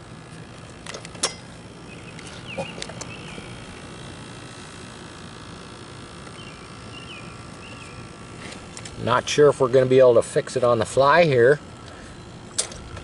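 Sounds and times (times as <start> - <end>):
warbling bird chirps: 1.8 - 3.9, 6.3 - 8.1.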